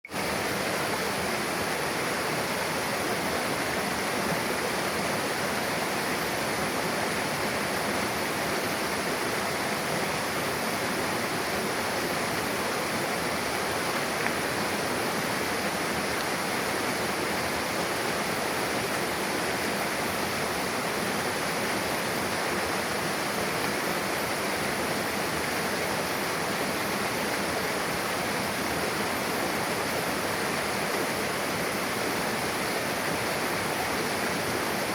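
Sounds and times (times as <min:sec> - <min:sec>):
river rushing over rocks: 0:00.0 - 0:34.9.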